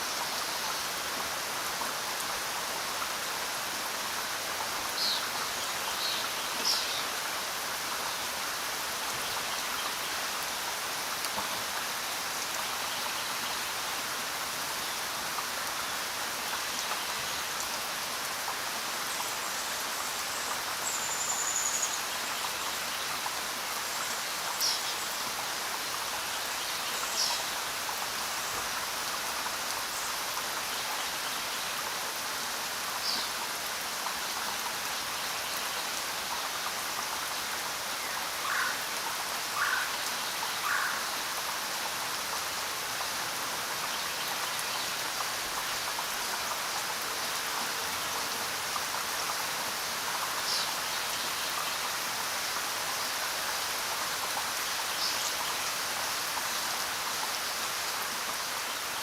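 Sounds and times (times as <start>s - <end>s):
steady rainfall: 0.0s - 59.0s.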